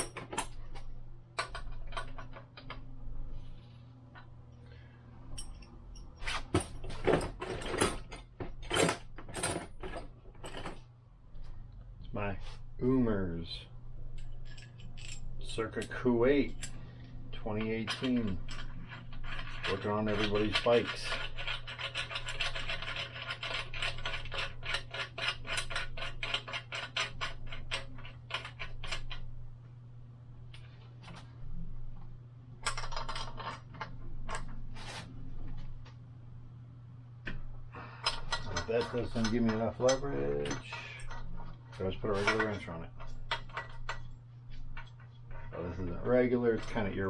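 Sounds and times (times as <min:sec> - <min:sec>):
steady low hum: 0:00.0 - 0:47.0
hand tools scraping and clattering: 0:17.4 - 0:28.8, 0:37.8 - 0:47.0.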